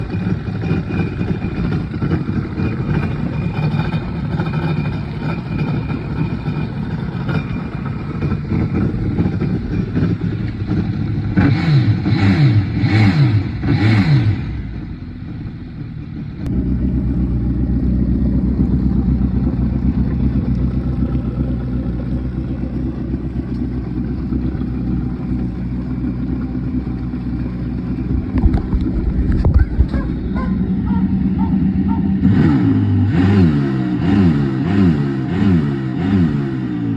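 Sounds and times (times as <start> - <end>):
watercraft engine idling and revving: 0.0 - 36.9.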